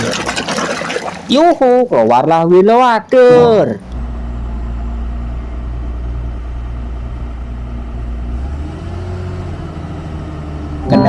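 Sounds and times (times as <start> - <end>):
heavy vehicle engine rumbling: 3.3 - 11.0.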